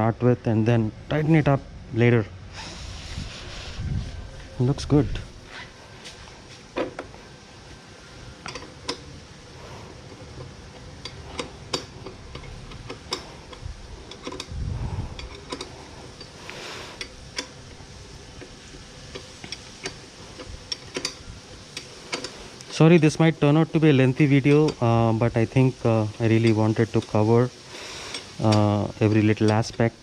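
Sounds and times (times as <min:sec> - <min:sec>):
spanner clicking on bolts: 0:08.4 - 0:09.1, 0:10.2 - 0:30.0.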